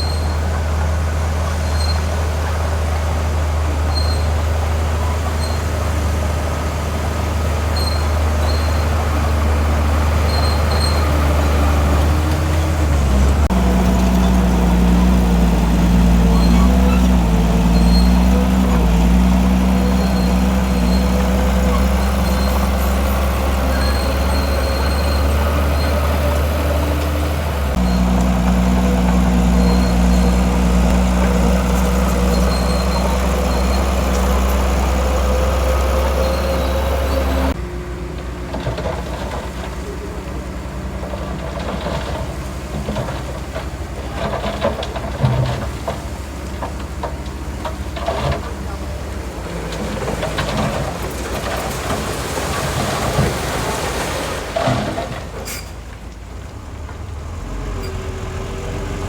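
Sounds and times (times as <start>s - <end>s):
heavy diesel machinery running: 0.0s - 59.0s.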